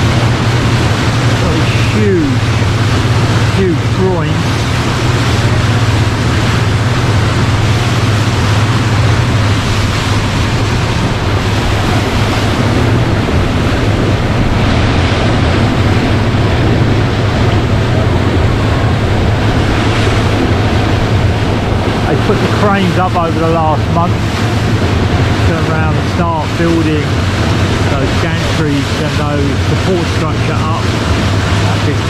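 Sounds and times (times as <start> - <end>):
boat engine drone: 0.0 - 32.0
water washing past hull: 0.0 - 32.0
wind on microphone: 0.0 - 32.0.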